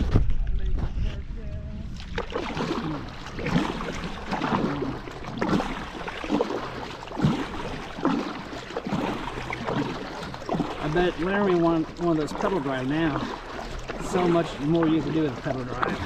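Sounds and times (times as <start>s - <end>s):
kayak paddle splashing water: 1.8s - 16.0s
paddle knocking against hull: 1.9s - 16.0s.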